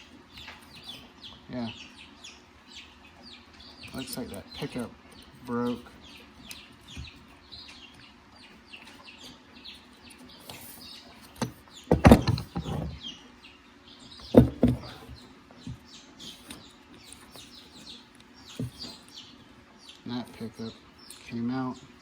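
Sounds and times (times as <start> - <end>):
small birds chirping: 0.0 - 22.0
sharp knocks: 11.4 - 12.9, 14.2 - 15.1.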